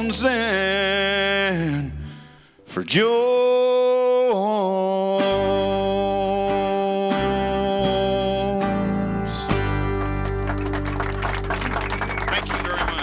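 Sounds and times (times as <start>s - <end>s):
strummed acoustic guitar: 5.1s - 10.9s
bass line: 5.2s - 13.0s.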